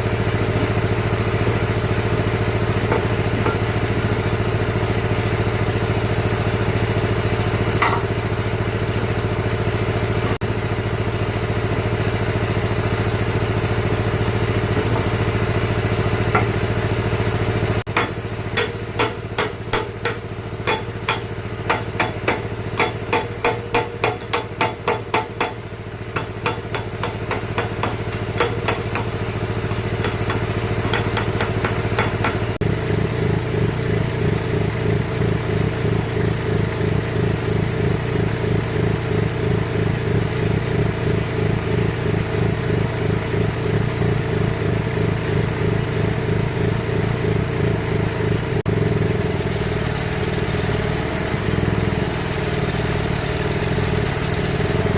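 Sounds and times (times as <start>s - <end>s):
hammer blows ringing: 17.9s - 25.6s
excavator engine running: 48.1s - 54.9s.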